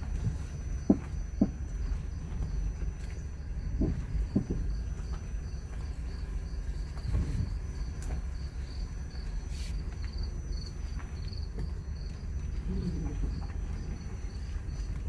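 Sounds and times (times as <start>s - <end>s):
low road rumble: 0.0s - 15.0s
sharp knocks: 3.8s - 4.7s.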